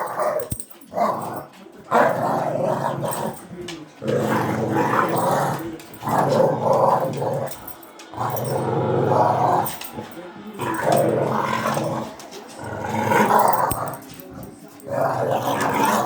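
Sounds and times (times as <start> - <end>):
dog growling: 0.0 - 16.0.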